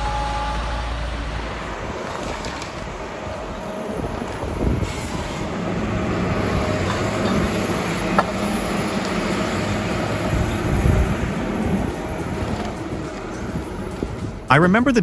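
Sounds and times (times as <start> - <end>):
heavy machinery rumble and rattle: 0.0 - 14.6.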